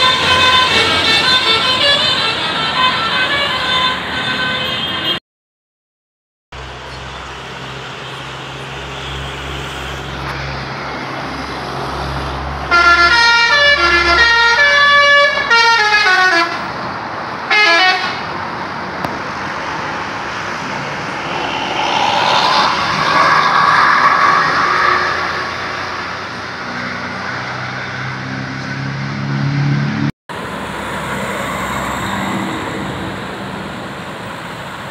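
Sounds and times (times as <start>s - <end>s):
bus engine running: 0.0s - 4.6s, 30.3s - 34.9s
multi-tone air horn melody: 0.0s - 5.2s, 12.7s - 16.7s, 17.5s - 18.2s.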